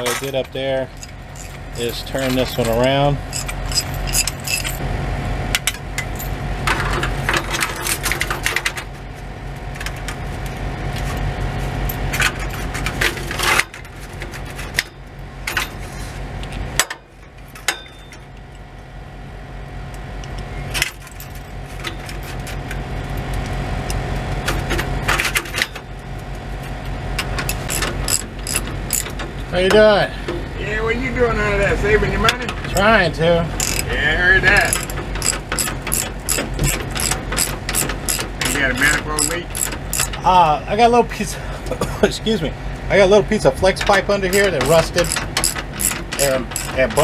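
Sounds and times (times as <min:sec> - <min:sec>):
metal clamp hardware clinking: 0:00.0 - 0:04.8, 0:33.6 - 0:33.9, 0:44.3 - 0:47.0
steady low hum: 0:00.0 - 0:47.0.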